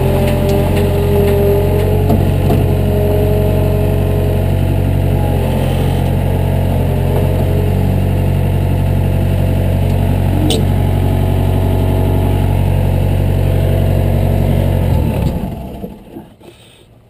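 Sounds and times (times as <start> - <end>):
heavy equipment engine running: 0.0 - 16.8
wavering whine: 5.2 - 14.6.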